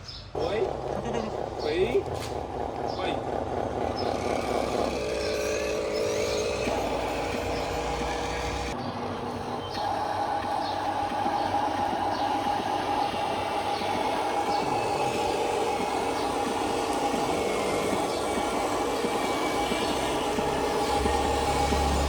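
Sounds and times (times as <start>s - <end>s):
electric motor whirring: 0.4s - 22.0s.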